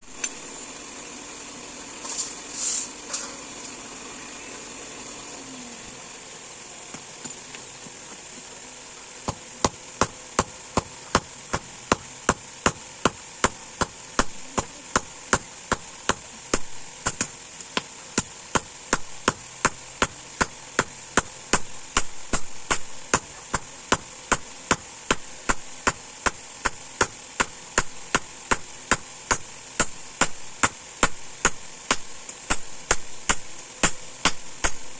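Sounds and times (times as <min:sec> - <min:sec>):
steady hiss: 0:00.0 - 0:34.9
hammer striking steel on anvil: 0:09.3 - 0:34.9.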